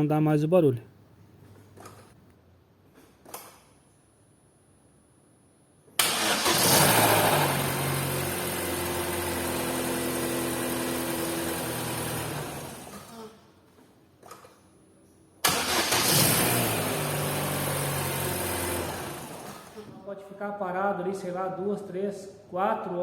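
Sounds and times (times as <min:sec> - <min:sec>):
car engine cranking and idling: 0:06.0 - 0:13.1, 0:15.4 - 0:19.9.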